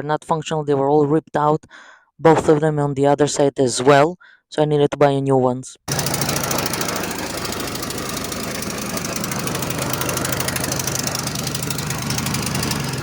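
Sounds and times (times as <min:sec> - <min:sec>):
snowblower engine running: 0:05.9 - 0:13.0.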